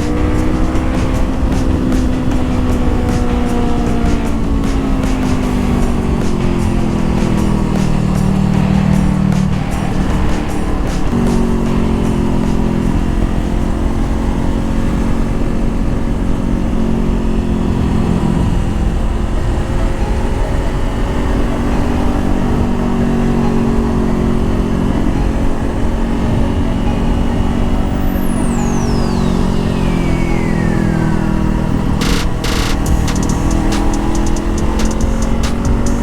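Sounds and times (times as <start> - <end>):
motorcycle engine running: 0.0 - 36.0
thin high falling tone: 17.0 - 36.0.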